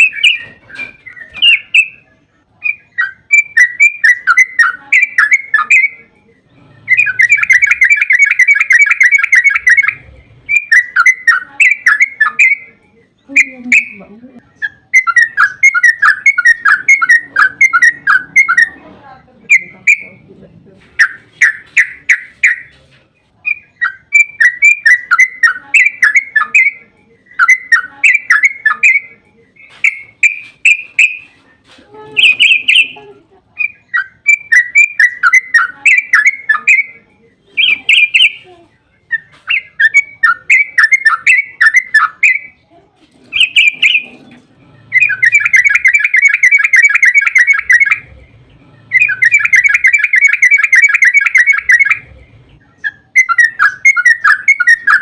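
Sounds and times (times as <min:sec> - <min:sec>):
bird chattering song: 0:00.0 - 0:42.6, 0:43.2 - 0:55.0
bird rapid rolling trills: 0:02.6 - 0:12.7, 0:13.3 - 0:20.2, 0:32.2 - 0:33.0, 0:33.6 - 0:38.4, 0:43.2 - 0:55.0.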